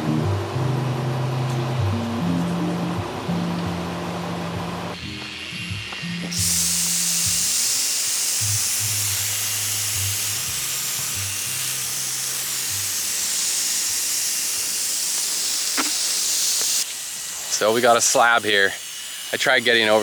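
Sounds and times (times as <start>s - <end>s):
background music with bass: 0.0s - 7.6s
hose spraying water on concrete: 5.0s - 20.0s.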